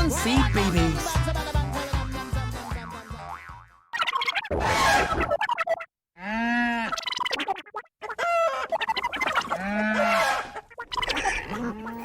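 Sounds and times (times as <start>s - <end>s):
farmyard animal calls: 8.0s - 12.0s.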